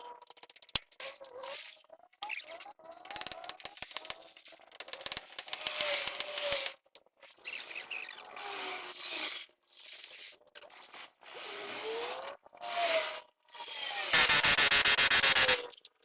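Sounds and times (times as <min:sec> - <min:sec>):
ratchet wrench clicking: 0:00.2 - 0:00.8, 0:03.1 - 0:06.8, 0:14.2 - 0:15.6
metal parts scraping and squeaking: 0:03.1 - 0:04.1, 0:04.7 - 0:06.7.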